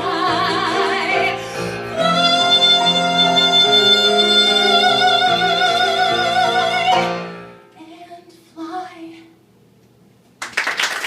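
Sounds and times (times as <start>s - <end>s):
piano and strings: 0.0s - 7.7s
audience applause: 10.4s - 11.0s.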